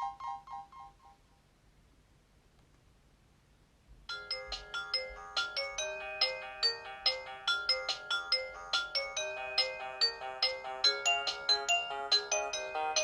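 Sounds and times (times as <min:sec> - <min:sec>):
polyphonic phone ringtone: 0:04.1 - 0:13.0.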